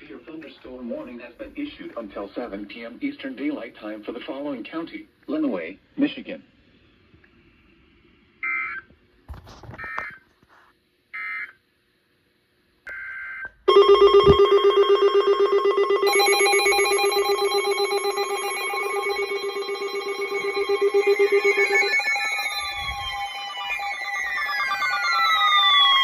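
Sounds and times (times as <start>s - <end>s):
pulsing electronic alarm: 13.7s - 26.0s
alert data tone chirps: 15.6s - 26.0s.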